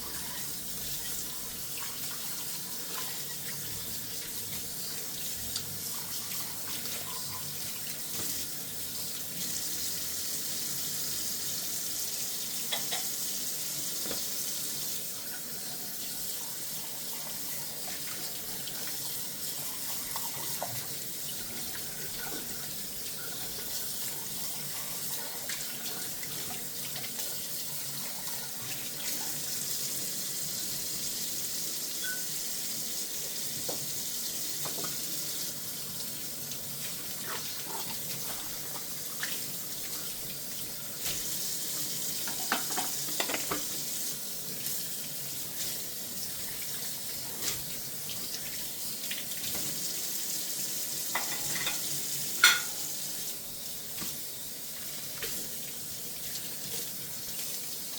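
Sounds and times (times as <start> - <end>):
tap running into sink: 14.0 - 14.3, 33.6 - 34.0, 34.6 - 35.0, 42.2 - 43.9
dishes clinking and knocking: 32.0 - 32.3, 42.2 - 43.7, 51.1 - 53.0.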